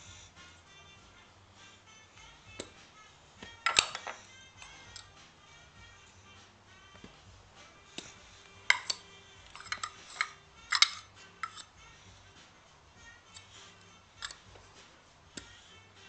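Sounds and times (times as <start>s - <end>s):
faint music: 0.0s - 16.0s
hard objects clacking together: 3.5s - 5.1s, 8.0s - 11.7s, 14.2s - 14.6s.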